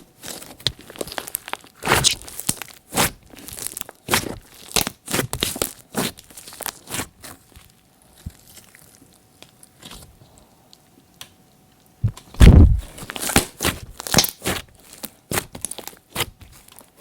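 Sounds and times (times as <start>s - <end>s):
slime squishing and popping: 0.2s - 10.0s, 12.0s - 16.8s
loud low thud: 12.0s - 12.9s.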